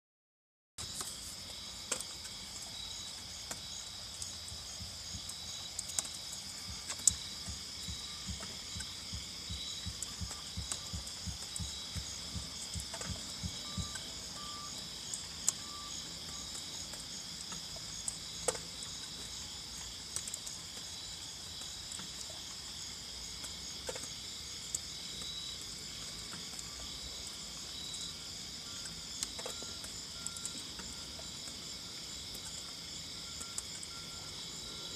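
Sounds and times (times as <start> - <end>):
insect chorus chirring: 0.8 - 34.9
lower beeps: 9.5 - 16.6
faint high beep: 13.6 - 14.9.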